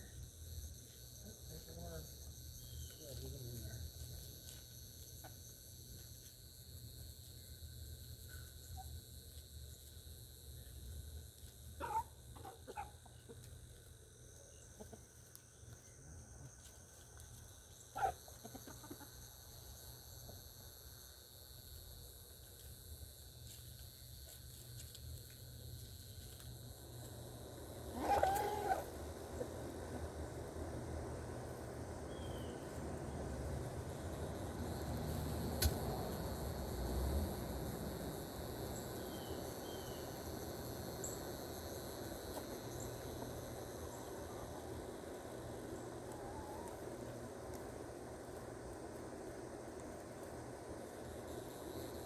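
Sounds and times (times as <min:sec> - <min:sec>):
insects buzzing: 0:00.0 - 0:52.0
chicken clucking: 0:14.8 - 0:15.1, 0:18.0 - 0:19.1.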